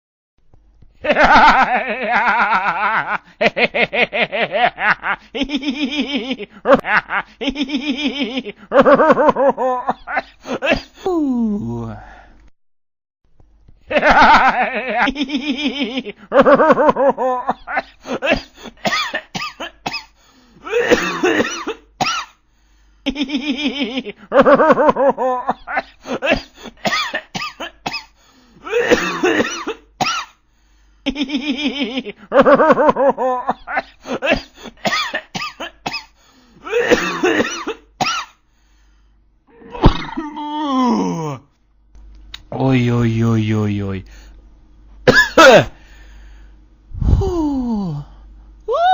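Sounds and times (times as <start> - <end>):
person coughing: 18.2 - 22.4, 26.2 - 30.4, 34.2 - 38.4, 45.1 - 45.8.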